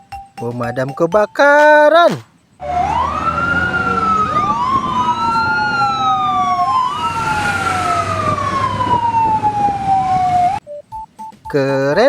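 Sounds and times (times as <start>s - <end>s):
fire engine wail siren: 2.6s - 10.6s.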